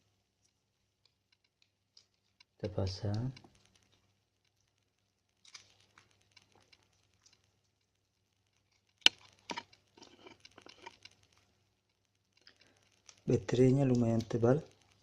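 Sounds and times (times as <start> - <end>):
small plastic clicks: 8.5 - 15.0.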